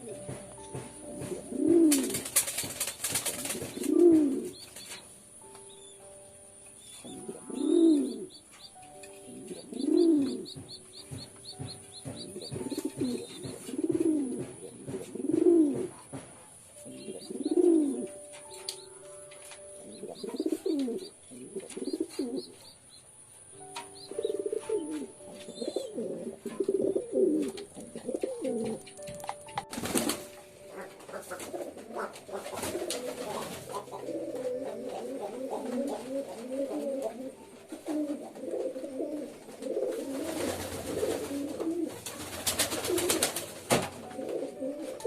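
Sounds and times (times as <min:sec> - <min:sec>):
pigeons cooing: 0:01.2 - 0:05.0, 0:07.0 - 0:08.5, 0:09.2 - 0:11.4, 0:12.0 - 0:16.2, 0:16.9 - 0:18.2, 0:19.8 - 0:22.6, 0:24.1 - 0:29.0, 0:30.6 - 0:43.5.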